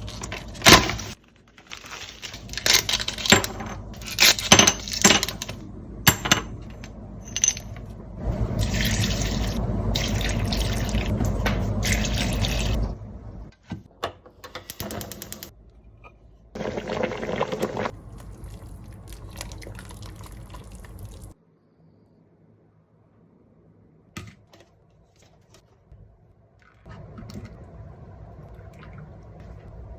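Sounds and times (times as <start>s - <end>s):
water pouring: 8.3s - 13.0s, 16.6s - 21.4s.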